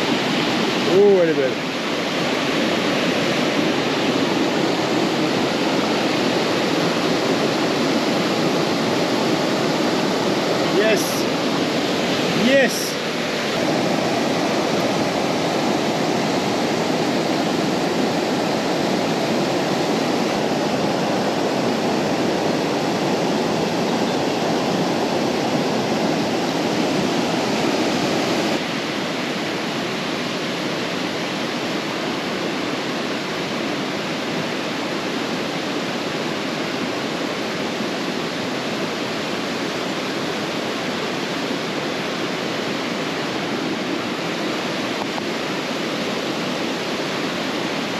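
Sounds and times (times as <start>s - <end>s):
river rushing over stones: 0.0s - 47.9s.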